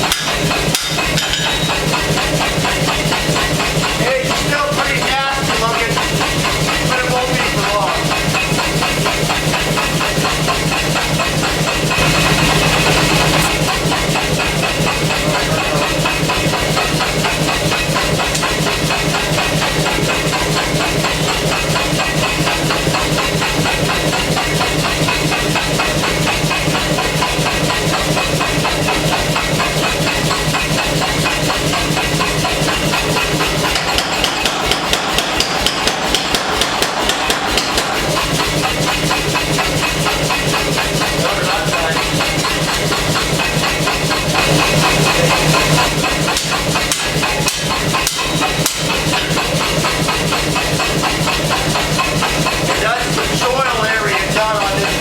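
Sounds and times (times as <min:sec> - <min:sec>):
air hammer striking steel: 0:00.0 - 0:04.6, 0:11.3 - 0:23.6, 0:32.2 - 0:39.3, 0:45.4 - 0:55.0.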